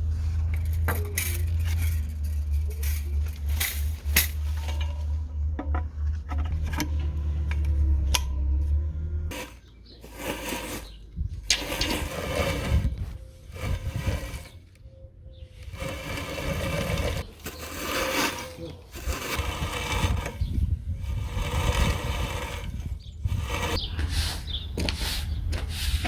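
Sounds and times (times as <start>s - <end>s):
rake scraping through leaves: 9.3s - 14.6s, 15.6s - 26.0s.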